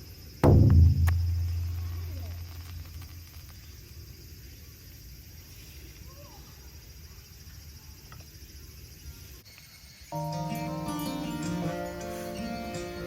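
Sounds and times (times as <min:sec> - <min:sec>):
insects chirping trill: 0:00.0 - 0:13.0
low rumble: 0:00.4 - 0:03.6.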